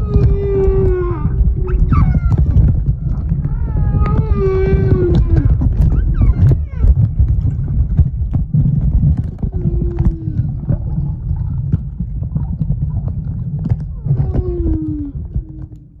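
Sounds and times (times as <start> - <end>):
whale moaning: 0.0 - 7.1, 9.4 - 11.2, 13.9 - 16.0.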